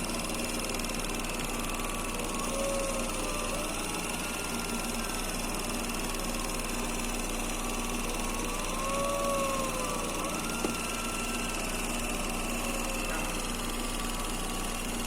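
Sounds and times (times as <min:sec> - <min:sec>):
engine idling: 0:00.0 - 0:15.0
power steering pump whining: 0:00.0 - 0:15.0.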